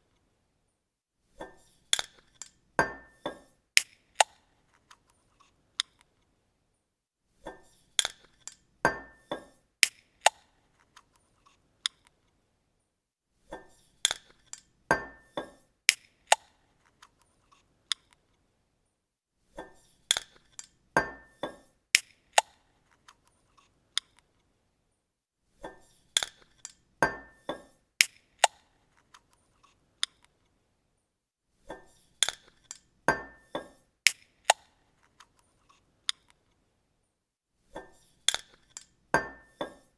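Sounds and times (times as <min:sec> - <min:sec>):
bottle cap opening clicks: 0:03.8 - 0:04.4, 0:09.8 - 0:10.4, 0:28.0 - 0:28.6, 0:34.1 - 0:34.7, 0:38.3 - 0:38.9.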